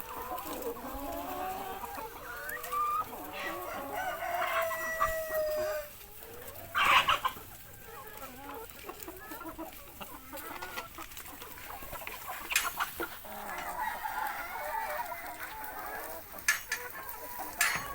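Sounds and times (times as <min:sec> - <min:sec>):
chickens clucking: 0:00.0 - 0:17.9
chicken squawking: 0:06.7 - 0:07.5.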